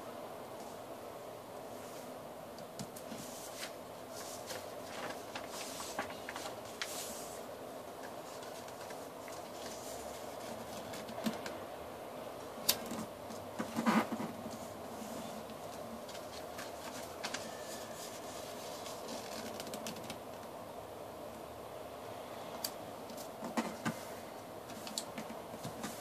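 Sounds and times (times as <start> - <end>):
paper rustling and crackling: 2.8 - 11.6, 15.6 - 20.2.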